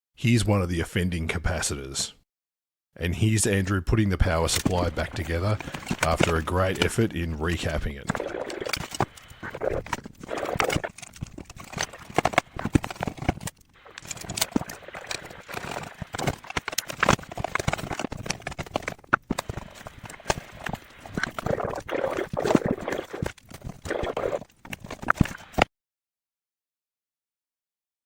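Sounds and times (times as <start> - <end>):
hard parts clicking and scraping: 4.3 - 25.7.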